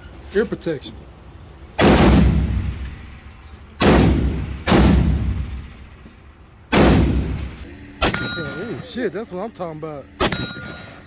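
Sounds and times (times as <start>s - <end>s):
gunshots with echo: 1.8s - 2.7s, 3.8s - 5.5s, 6.7s - 8.6s.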